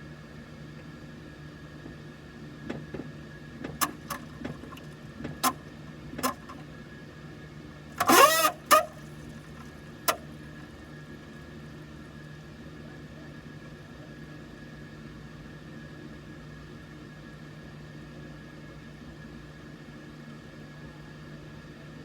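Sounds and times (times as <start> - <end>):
aircraft cabin hum: 2.7 - 6.8
sharp clicks and creaks: 6.2 - 6.6, 8.0 - 9.0.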